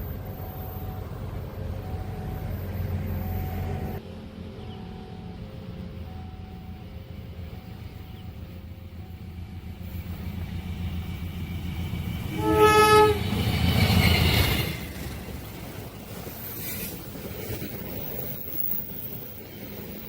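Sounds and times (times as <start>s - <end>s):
train rumble and rush passing: 0.0s - 20.0s
train horn blast: 12.3s - 13.5s.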